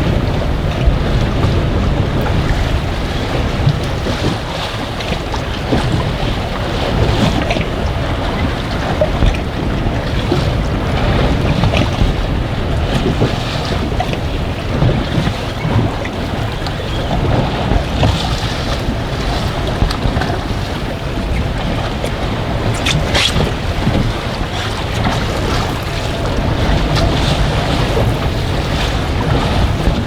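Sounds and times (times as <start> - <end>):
choppy water washing: 0.0 - 30.0
wind buffeting microphone: 0.0 - 30.0
small water splashes: 19.4 - 28.1.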